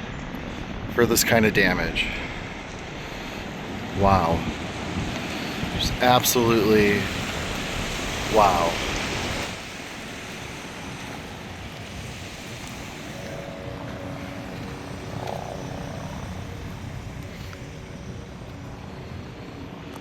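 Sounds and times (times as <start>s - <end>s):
outdoor background hiss: 0.0s - 20.0s
faint engine hum: 6.6s - 20.0s.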